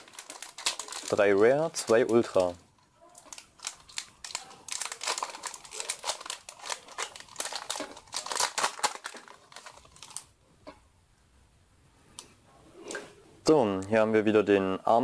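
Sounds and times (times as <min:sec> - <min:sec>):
foil wrapper crinkling and tearing: 0:00.0 - 0:10.3.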